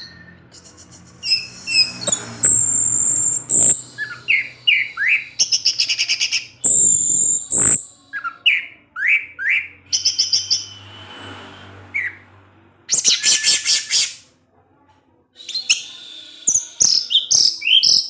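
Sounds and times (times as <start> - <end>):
thrush singing: 0.0 - 12.3.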